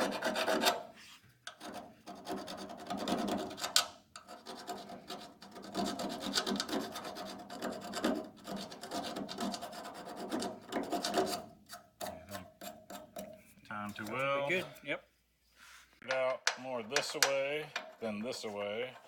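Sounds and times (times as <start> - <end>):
file rasping on steel: 0.0 - 13.4.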